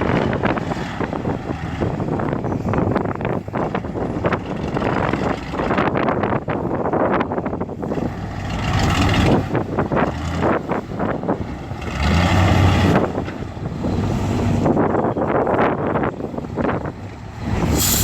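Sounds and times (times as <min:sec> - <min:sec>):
bulldozer diesel engine: 0:00.0 - 0:18.0
metallic clanking and scraping: 0:17.6 - 0:18.0.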